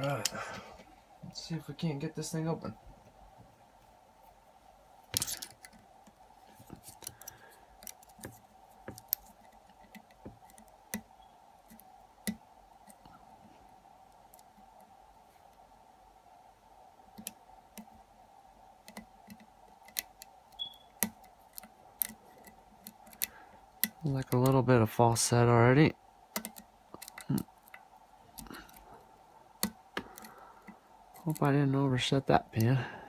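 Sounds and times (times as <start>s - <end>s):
faint steady hum: 0.0s - 33.0s
lock picking clicks and scrapes: 5.1s - 5.8s, 18.9s - 24.6s, 26.4s - 28.8s.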